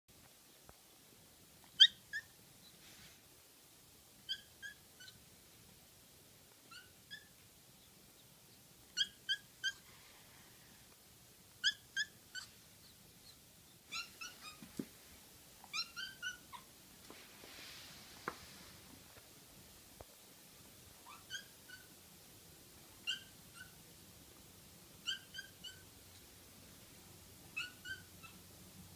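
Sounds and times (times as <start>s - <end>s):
kitten crying high-pitched mews: 13.9s - 14.6s.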